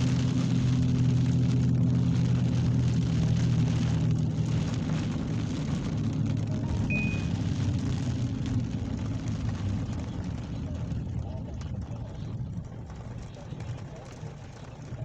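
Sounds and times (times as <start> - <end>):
steady rain: 0.0 - 15.0
low steady hum: 0.8 - 15.0
short high beep: 6.7 - 7.4.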